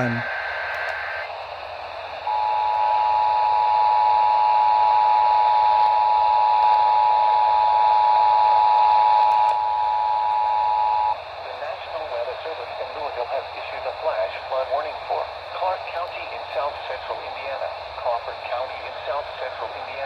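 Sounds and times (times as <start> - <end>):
radio static hiss: 11.5 - 20.0.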